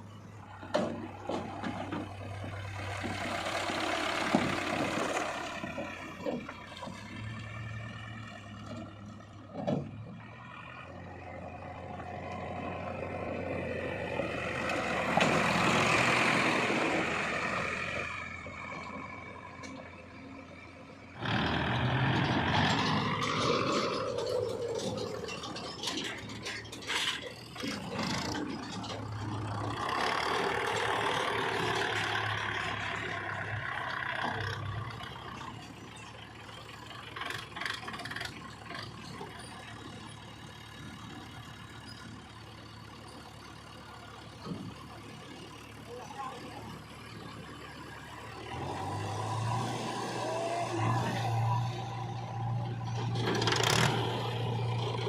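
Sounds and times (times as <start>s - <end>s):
diesel engine revving: 0.0s - 55.0s
scraping and metal clanks: 22.1s - 29.9s.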